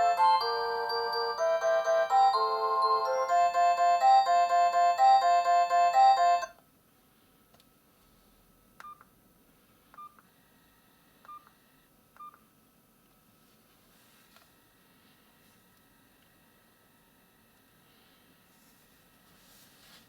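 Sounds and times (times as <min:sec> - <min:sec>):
phone ringtone melody: 0:00.0 - 0:06.5.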